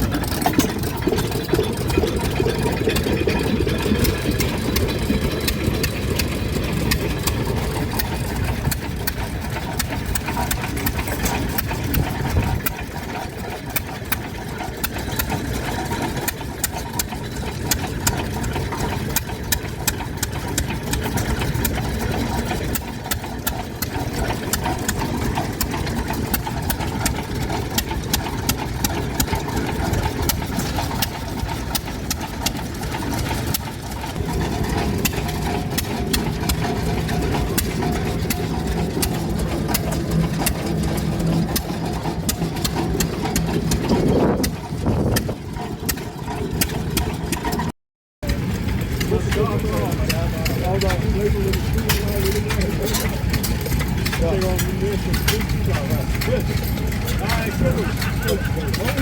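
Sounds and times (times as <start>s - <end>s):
stationary engine running: 0.0s - 59.0s.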